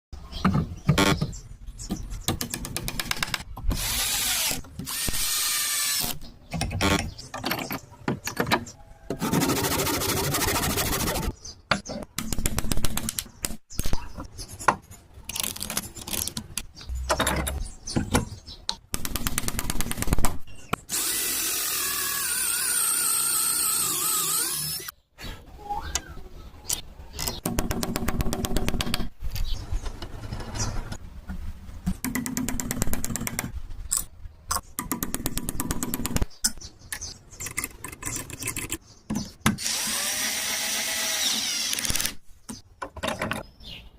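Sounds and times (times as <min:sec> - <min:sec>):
power tools working wood: 0:39.6 - 0:42.1.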